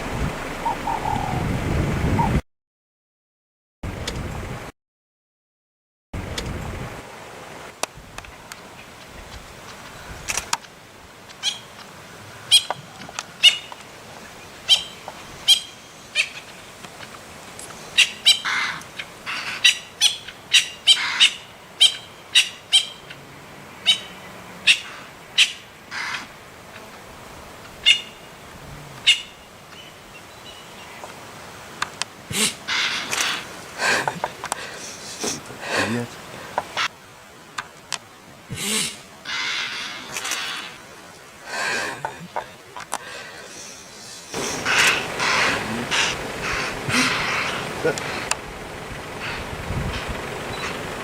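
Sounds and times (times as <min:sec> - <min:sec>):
bird chirping: 0:00.6 - 0:01.4, 0:14.7 - 0:16.7, 0:17.6 - 0:23.2, 0:29.0 - 0:31.1.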